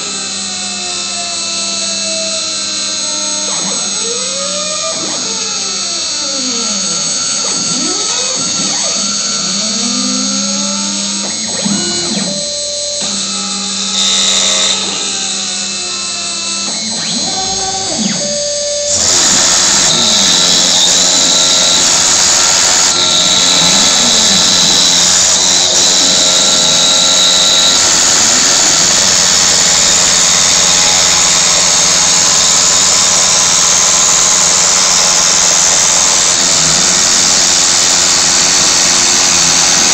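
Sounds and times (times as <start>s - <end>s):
steady spindle tone: 0.0s - 39.9s
stepper motors whining: 0.0s - 39.9s
loud steady hiss: 13.8s - 16.7s, 18.8s - 39.9s.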